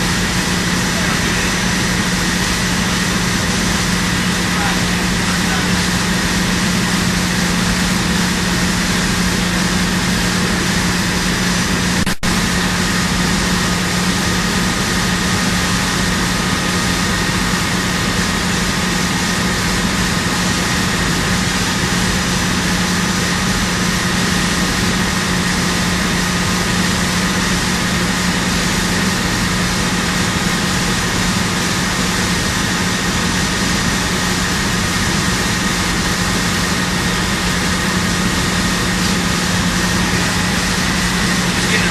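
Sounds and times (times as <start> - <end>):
machinery humming: 0.0 - 41.9.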